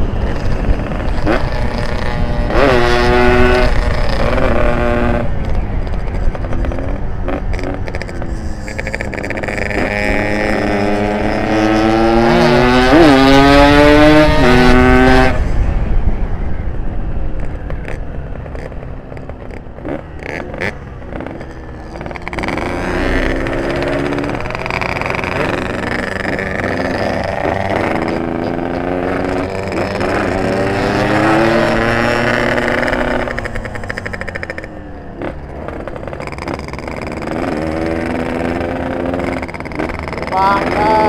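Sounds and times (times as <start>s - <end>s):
two-stroke motorcycle engine revving: 0.0s - 15.5s, 17.8s - 41.0s.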